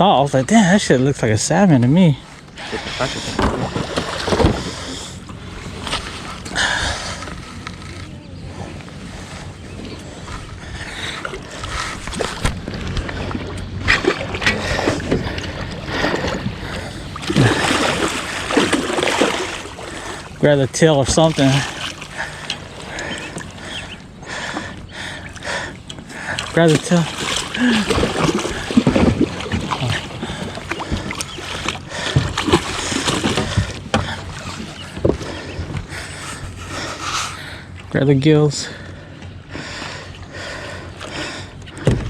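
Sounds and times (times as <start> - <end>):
water splashing against boat hull: 0.0 - 42.0
knocks and thumps: 27.2 - 36.0, 41.8 - 42.0.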